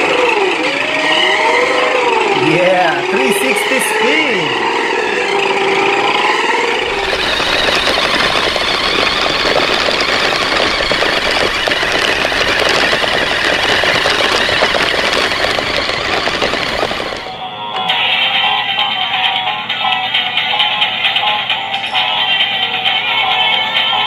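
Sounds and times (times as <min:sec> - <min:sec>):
toy truck motor buzzing: 0:00.0 - 0:17.3
plastic chassis rattling: 0:05.9 - 0:17.3.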